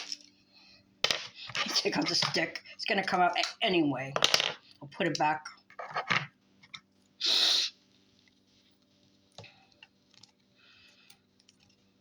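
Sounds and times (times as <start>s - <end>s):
person's sharp breath: 7.2s - 7.8s.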